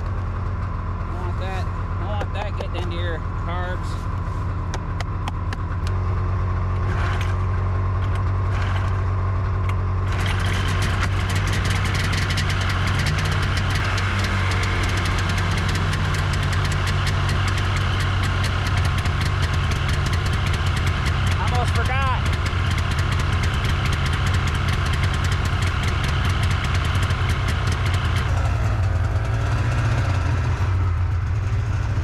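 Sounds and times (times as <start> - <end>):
snowmobile engine idling: 0.0 - 32.0
fast rattly clatter: 10.1 - 30.4.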